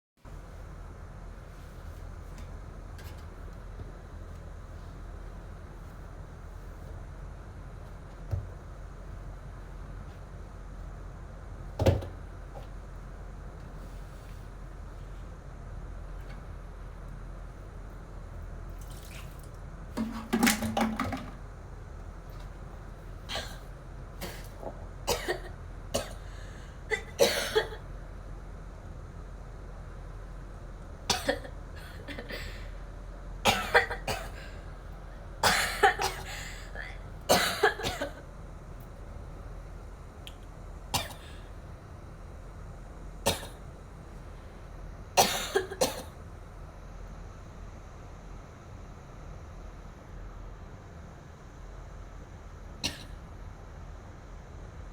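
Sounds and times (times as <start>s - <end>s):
girl coughing: 25.1s - 26.2s, 26.9s - 27.8s, 31.1s - 32.6s, 33.5s - 34.5s, 35.4s - 38.2s, 41.0s - 41.4s, 45.2s - 46.1s.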